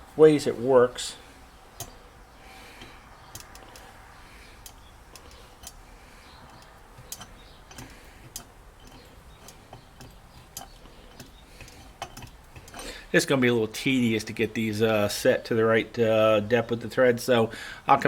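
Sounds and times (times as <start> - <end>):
metallic clicks of small tools: 2.8 - 3.9, 4.6 - 5.8, 6.5 - 12.9.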